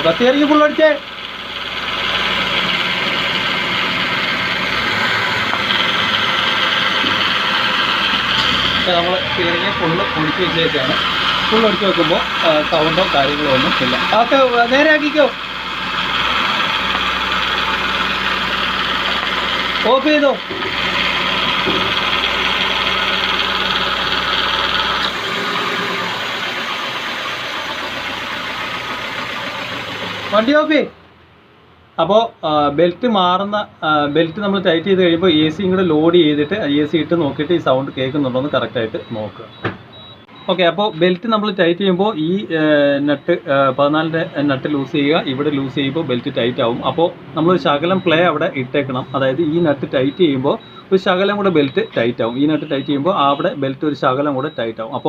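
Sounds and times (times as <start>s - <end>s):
car engine idling: 0.0s - 31.4s, 33.4s - 55.0s.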